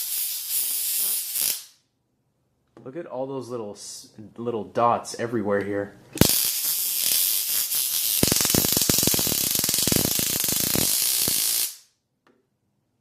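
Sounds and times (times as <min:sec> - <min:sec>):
stun gun electric crackle: 0:00.0 - 0:01.8, 0:06.2 - 0:11.9.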